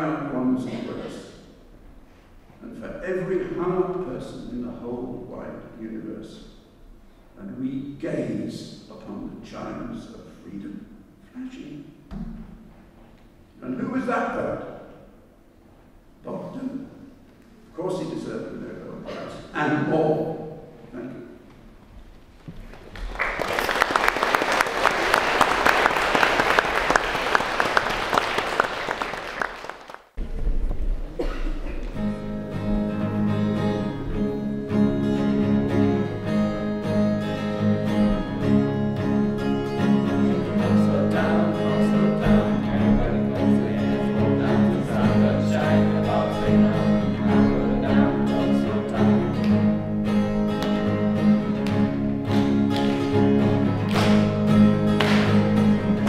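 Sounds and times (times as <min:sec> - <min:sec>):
audience applauding: 0:22.6 - 0:30.1, 0:53.8 - 0:55.8
instrumental music with guitar and strings: 0:31.8 - 0:56.0.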